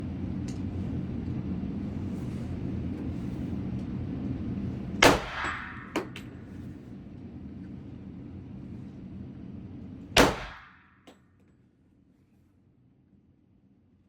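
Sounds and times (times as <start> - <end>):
pistol shot with metallic ring: 5.0 - 6.1, 10.2 - 10.8.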